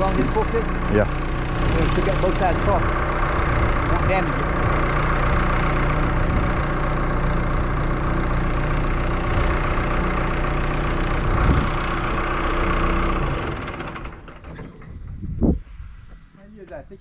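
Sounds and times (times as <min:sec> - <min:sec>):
heavy vehicle engine idling: 0:00.0 - 0:16.9
clank: 0:13.4 - 0:15.2.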